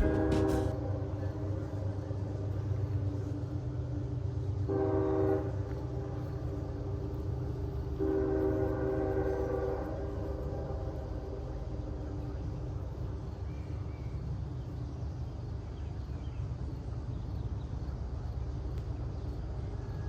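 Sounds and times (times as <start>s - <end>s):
train horn blasts: 0.0s - 2.0s, 4.6s - 6.9s, 7.9s - 12.4s
steady low rumble: 0.0s - 20.0s.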